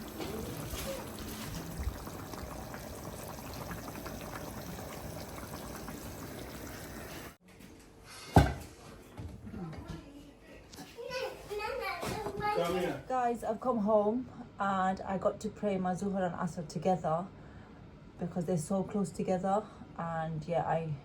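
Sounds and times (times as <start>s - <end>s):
curry bubbling and sizzling: 0.0s - 7.4s.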